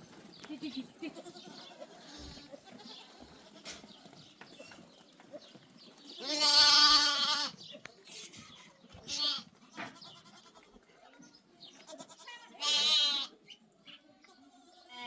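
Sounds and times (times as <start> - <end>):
goat bleating: 1.0 - 3.9, 6.2 - 10.8, 11.8 - 13.4, 14.3 - 15.0.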